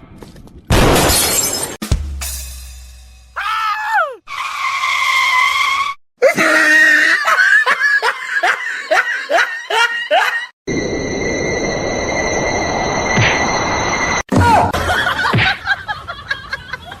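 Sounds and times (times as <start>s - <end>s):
person crying out and yelping: 3.4s - 4.2s, 6.2s - 7.4s.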